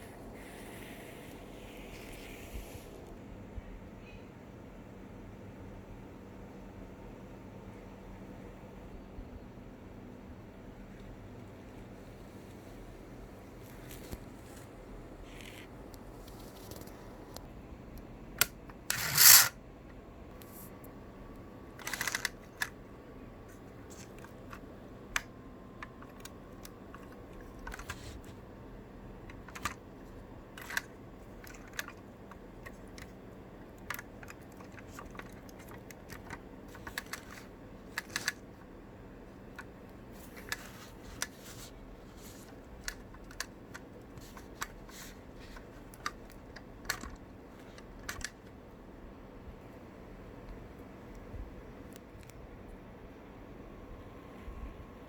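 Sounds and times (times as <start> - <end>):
small plastic and metal clicks: 21.8 - 22.8, 29.3 - 38.6, 42.4 - 48.5.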